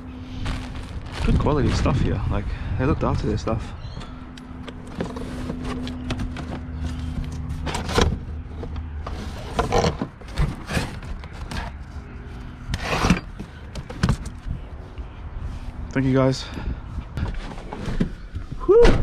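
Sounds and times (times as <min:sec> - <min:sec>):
low hum: 0:00.0 - 0:17.3
scrap scraping and rubbing: 0:04.7 - 0:14.4.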